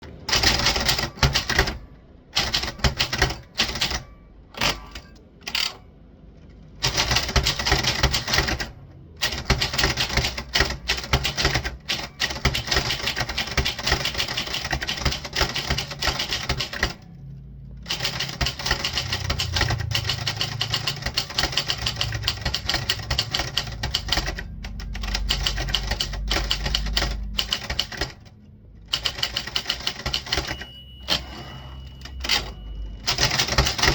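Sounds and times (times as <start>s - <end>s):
typewriter keystrikes: 0.0s - 5.8s, 6.8s - 17.0s, 17.8s - 28.3s, 28.9s - 31.2s, 32.0s - 33.9s
low hum: 30.6s - 33.1s.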